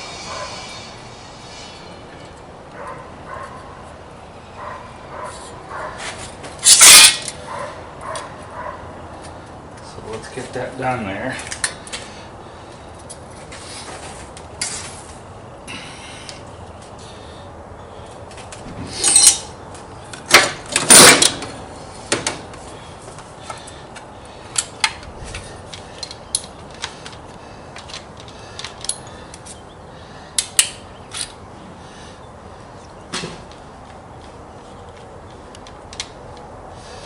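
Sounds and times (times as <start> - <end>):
metal tools clinking and knocking: 25.7 - 27.2.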